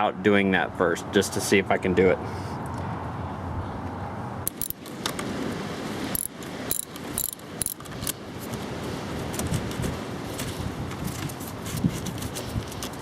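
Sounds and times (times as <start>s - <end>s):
metal hand tools clinking: 4.5s - 4.8s, 6.2s - 7.8s
wind noise on microphone: 7.7s - 13.0s.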